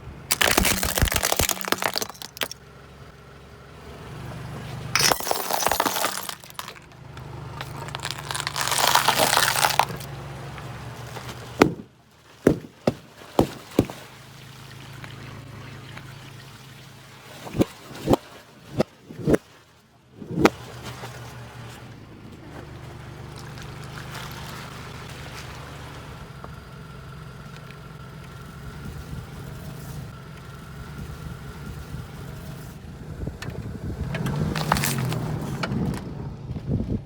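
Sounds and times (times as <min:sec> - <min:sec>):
car engine running: 0:00.0 - 0:17.6, 0:20.0 - 0:37.0
sharp loud pops: 0:11.6 - 0:11.9.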